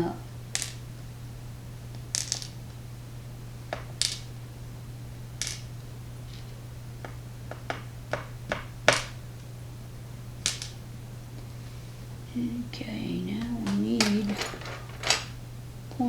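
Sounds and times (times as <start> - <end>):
steady low hum: 0.0 - 16.0
metal lock pins clicking: 13.4 - 15.4.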